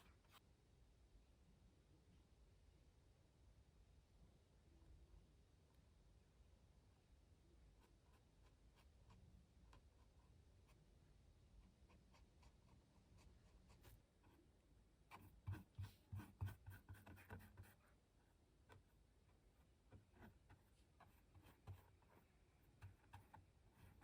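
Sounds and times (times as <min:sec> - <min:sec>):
pen scratching on paper: 0:15.1 - 0:17.9, 0:19.5 - 0:24.0.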